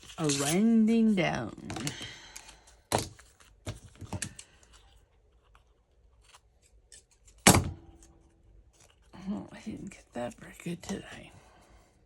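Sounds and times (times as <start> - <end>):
scissors cutting paper: 0.0 - 1.1.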